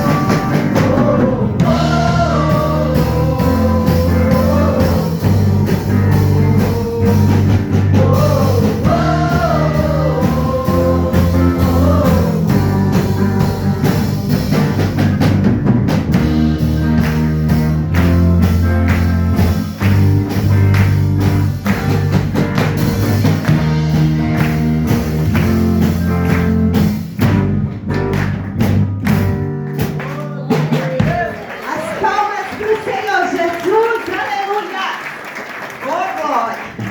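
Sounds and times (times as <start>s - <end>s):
person singing: 0.0s - 14.8s
rock band playing: 0.0s - 31.8s.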